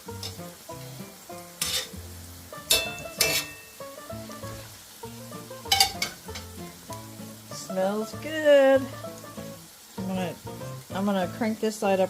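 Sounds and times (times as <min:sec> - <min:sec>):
background music: 0:00.0 - 0:12.0
patties sizzling in oil: 0:00.0 - 0:12.0
utensil scraping pan: 0:01.6 - 0:02.0, 0:02.7 - 0:03.7.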